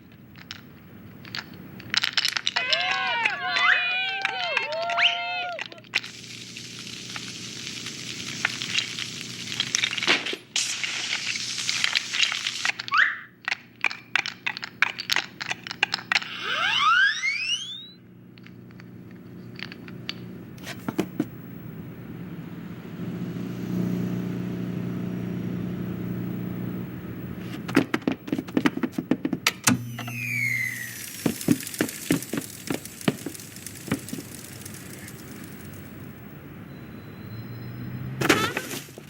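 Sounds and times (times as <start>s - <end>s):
steady low hum: 5.7s - 12.7s, 13.3s - 36.8s
rising whistle glides: 16.4s - 18.0s, 29.9s - 31.2s.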